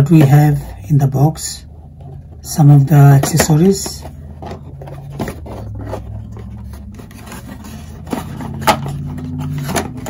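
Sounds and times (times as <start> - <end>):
low steady hum: 0.0 - 10.0
packaging rubbing and scraping: 3.6 - 10.0.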